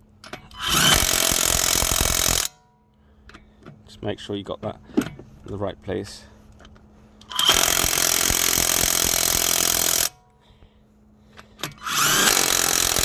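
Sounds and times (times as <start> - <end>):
impact wrench hammering: 0.3 - 2.6, 7.2 - 10.3, 11.6 - 13.0.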